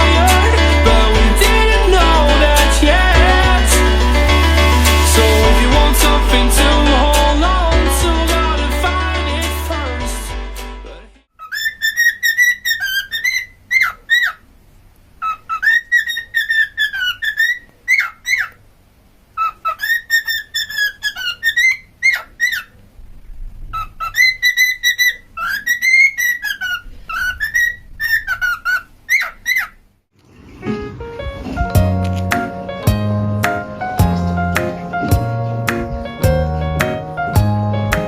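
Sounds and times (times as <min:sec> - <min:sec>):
cockatiel whistling a tune: 0:11.4 - 0:14.4.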